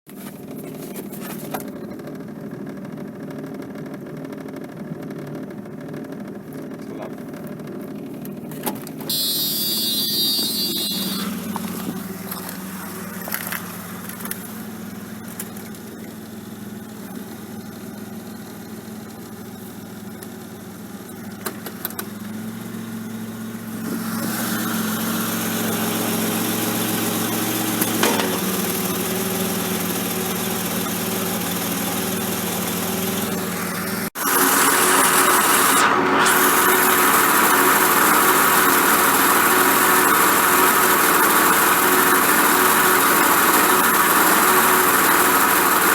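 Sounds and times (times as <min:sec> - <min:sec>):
car engine rumbling: 0:00.1 - 0:45.9
brief high-pitched sound: 0:09.1 - 0:11.6.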